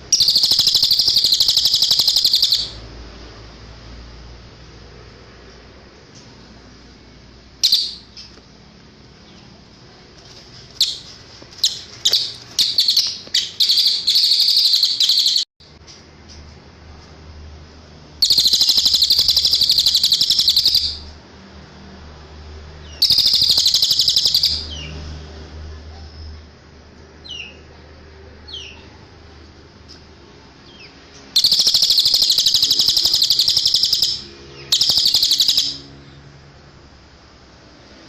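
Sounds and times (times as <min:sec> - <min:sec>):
songbird buzzy trills: 0:00.0 - 0:02.8, 0:07.6 - 0:08.4, 0:10.8 - 0:15.5, 0:18.2 - 0:21.1, 0:22.9 - 0:24.7, 0:30.6 - 0:36.2.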